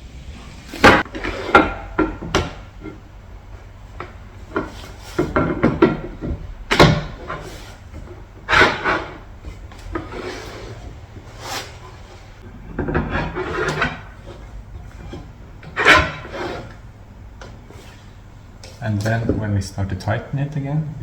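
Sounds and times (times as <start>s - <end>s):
wooden chair parts knocking: 0.8s - 11.4s, 12.6s - 16.8s.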